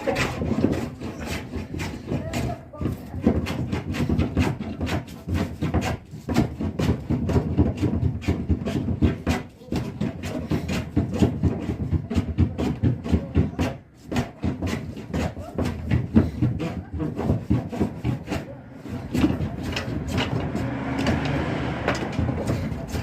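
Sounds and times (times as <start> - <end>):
hand tool working wood: 0.0 - 23.0.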